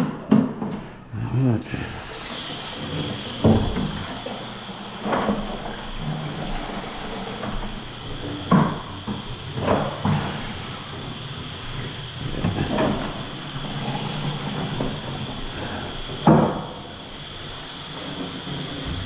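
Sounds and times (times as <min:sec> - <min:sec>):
steady background hum: 0:00.0 - 0:19.0.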